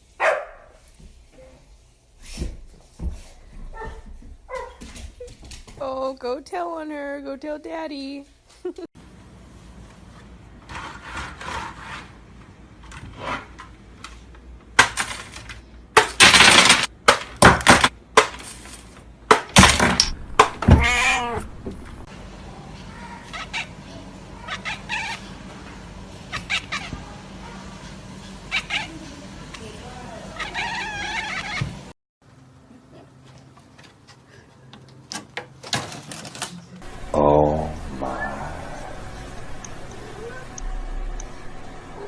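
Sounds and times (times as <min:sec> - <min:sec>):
cat meowing: 0:20.6 - 0:21.8, 0:30.4 - 0:31.7.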